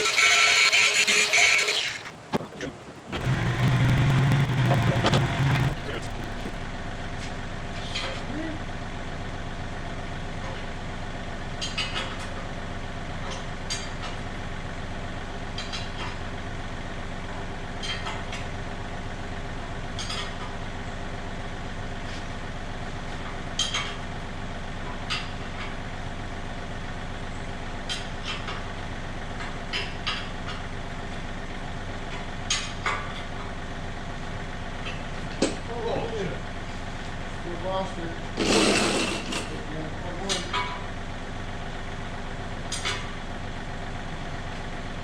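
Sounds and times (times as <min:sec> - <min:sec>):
engine idling: 0:02.8 - 0:07.0
short sharp clicks: 0:03.1 - 0:06.6.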